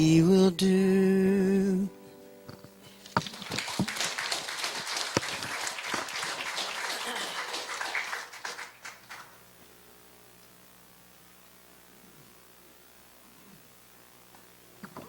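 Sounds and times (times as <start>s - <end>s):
congregation applauding: 2.8s - 9.4s.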